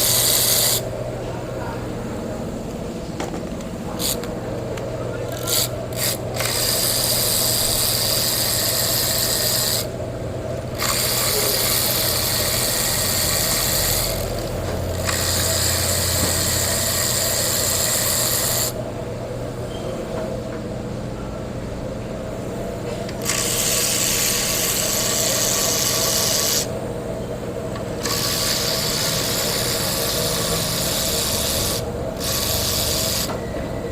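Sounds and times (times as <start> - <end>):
steady low hum: 0.0 - 33.9
long hissing sprays: 28.0 - 33.3.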